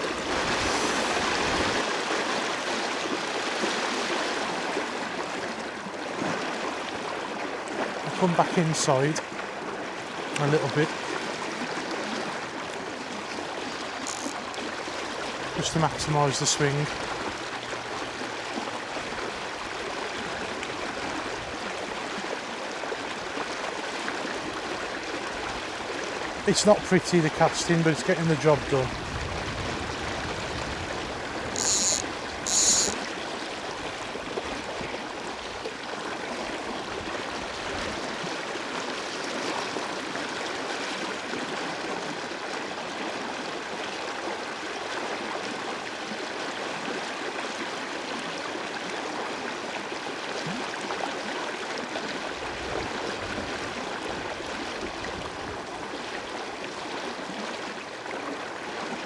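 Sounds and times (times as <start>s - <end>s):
river water flowing: 0.0s - 59.0s
short high-pitched buzzes: 14.0s - 14.4s, 31.5s - 33.0s.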